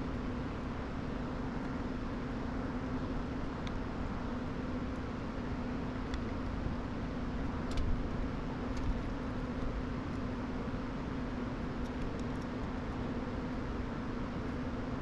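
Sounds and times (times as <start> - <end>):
low hum with hiss: 0.0 - 15.0
faint small clicks: 6.0 - 6.5, 7.6 - 8.0, 8.7 - 9.1, 11.8 - 12.8.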